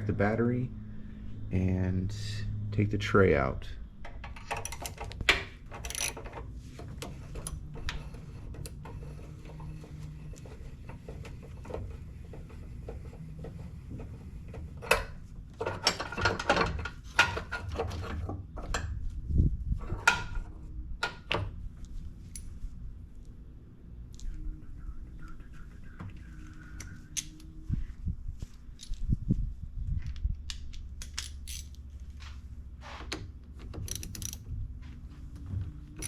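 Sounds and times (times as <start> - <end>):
ratchet clicking: 5.8 - 6.2, 31.2 - 31.7, 33.9 - 34.4
hand tools clinking on metal: 31.1 - 31.8.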